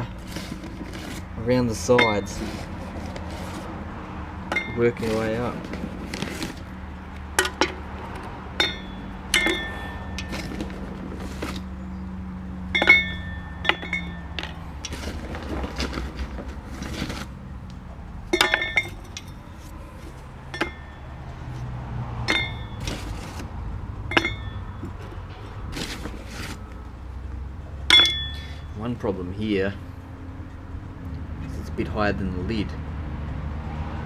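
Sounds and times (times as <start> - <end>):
briquettes clinking: 0.0 - 3.7, 4.4 - 11.9, 12.7 - 23.5, 27.9 - 28.7.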